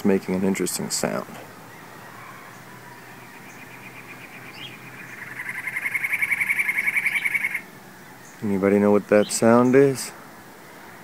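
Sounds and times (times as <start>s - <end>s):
songbird trilling: 1.5s - 8.6s.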